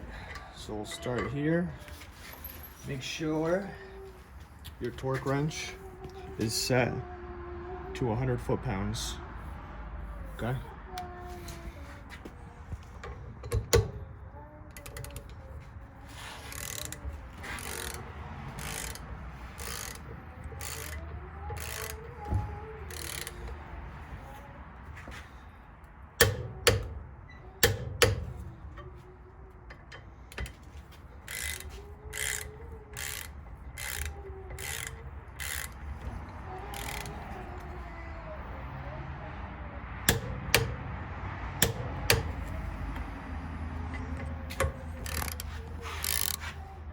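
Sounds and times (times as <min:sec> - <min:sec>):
torque wrench ratcheting: 0:14.8 - 0:15.4, 0:16.4 - 0:23.6, 0:29.8 - 0:37.4, 0:40.1 - 0:40.8, 0:41.6 - 0:42.8, 0:43.9 - 0:46.5
torque wrench clicking over: 0:16.5 - 0:19.0, 0:19.6 - 0:23.6, 0:29.7 - 0:36.1, 0:36.7 - 0:37.2, 0:40.1 - 0:40.8, 0:41.6 - 0:43.0, 0:43.9 - 0:46.5.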